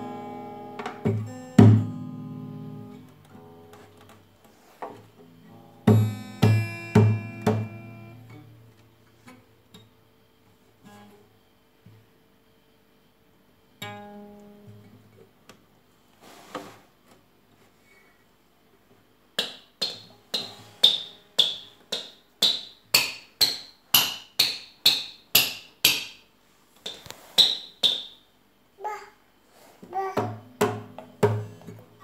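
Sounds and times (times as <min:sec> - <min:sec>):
hammer tapping on guitar: 0:00.7 - 0:02.8, 0:05.8 - 0:08.2, 0:19.4 - 0:26.2
guitar string note ringing: 0:05.9 - 0:08.5.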